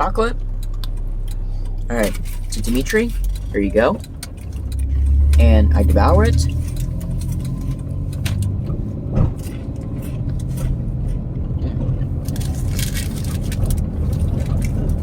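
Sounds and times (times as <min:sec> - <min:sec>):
steady low rumble: 0:00.0 - 0:15.0
person chewing chocolate bar: 0:00.4 - 0:05.4, 0:12.0 - 0:15.0.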